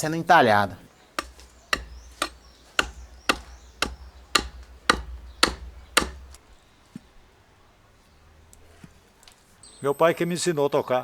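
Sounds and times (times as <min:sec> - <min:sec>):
hand tool chopping into wood: 0:01.2 - 0:07.1.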